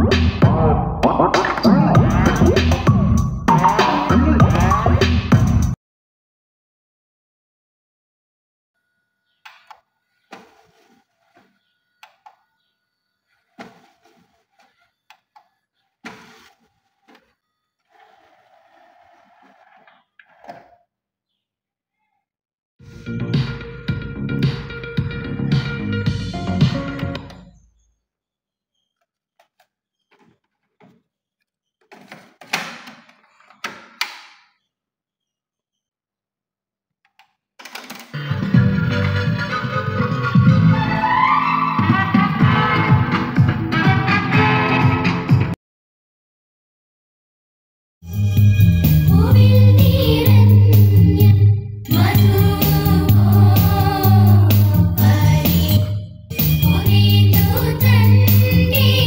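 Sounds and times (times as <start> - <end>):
music from hi-fi: 1.4 - 5.7.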